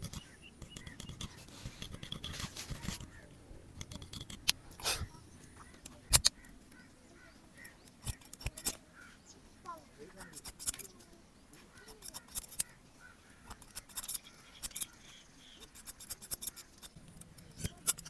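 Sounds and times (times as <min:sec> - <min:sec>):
scissors snipping hair: 0:00.0 - 0:03.2, 0:07.6 - 0:08.8, 0:10.2 - 0:15.0, 0:15.6 - 0:18.0
hissing rustle: 0:00.7 - 0:03.3.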